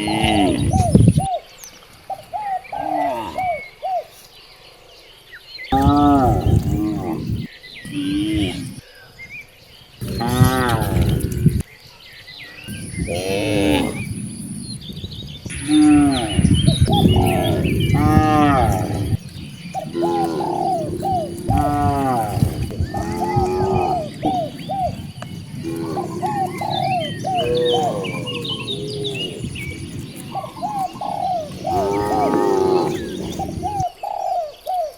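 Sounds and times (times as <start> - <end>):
cattle mooing: 5.8 - 8.8, 10.0 - 11.6, 15.5 - 33.7.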